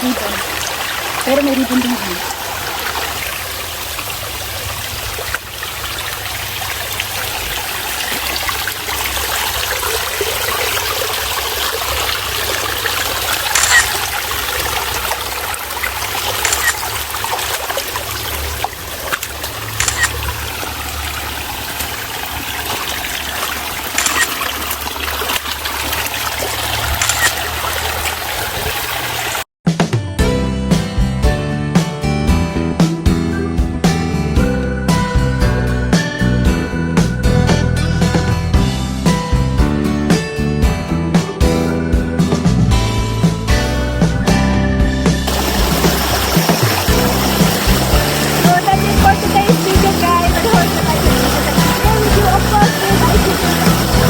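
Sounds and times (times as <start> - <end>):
stream water running over rocks: 0.0 - 29.5, 45.3 - 54.0.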